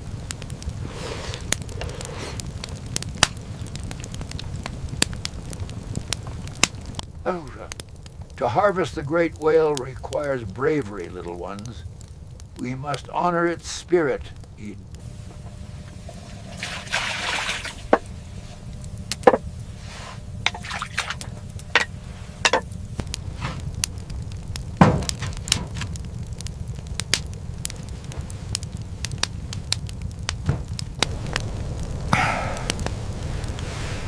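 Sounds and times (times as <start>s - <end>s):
steady low rumble: 0.0s - 34.0s
sharp cracks and knocks: 1.4s - 8.4s, 17.8s - 19.6s, 20.4s - 31.5s.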